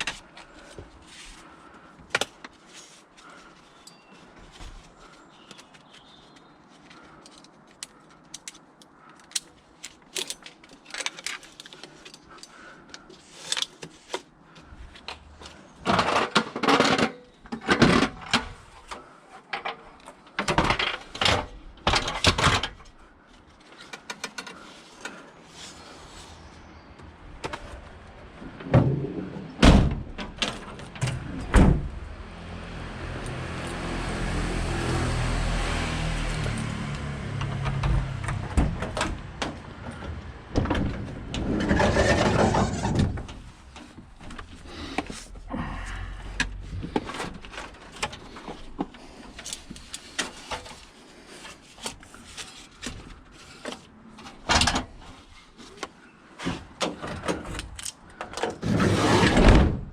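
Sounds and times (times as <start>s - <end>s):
knocks and clunks: 37.3s - 45.1s.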